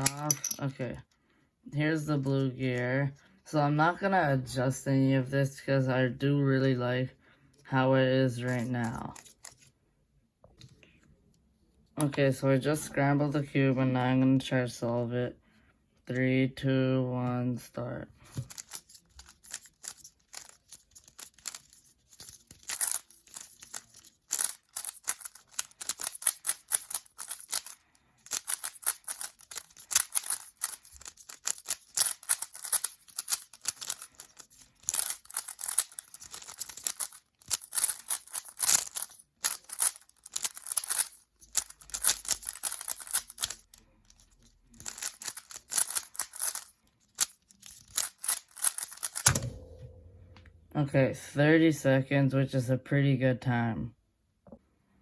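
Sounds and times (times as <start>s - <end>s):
fast plastic clacking of puzzle cube: 18.3s - 49.4s.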